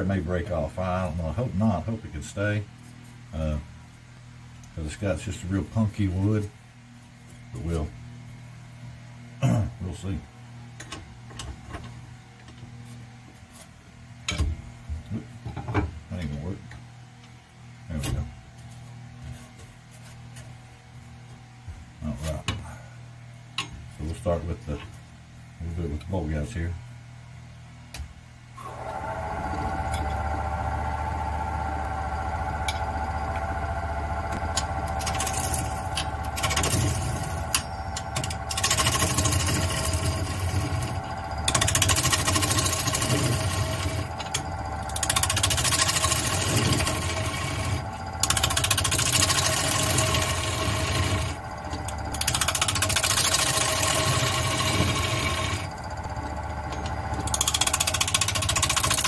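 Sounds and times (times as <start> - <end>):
lathe motor whine: 28.5 - 59.0.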